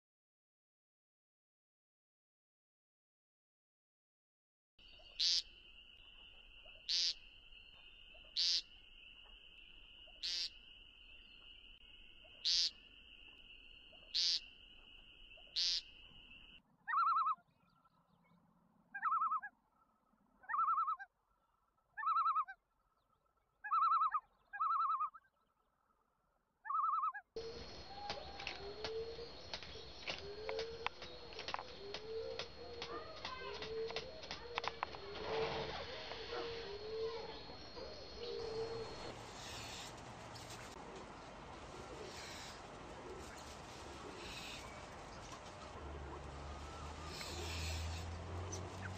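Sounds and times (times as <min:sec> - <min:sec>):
buzzy peent bird call: 0:05.0 - 0:05.5, 0:06.6 - 0:07.2, 0:08.2 - 0:08.8, 0:10.0 - 0:10.6, 0:12.2 - 0:12.8, 0:13.9 - 0:14.6, 0:15.4 - 0:17.4, 0:19.0 - 0:19.5, 0:20.4 - 0:21.1, 0:22.0 - 0:22.6, 0:23.6 - 0:25.3, 0:26.6 - 0:40.8, 0:41.8 - 0:48.9.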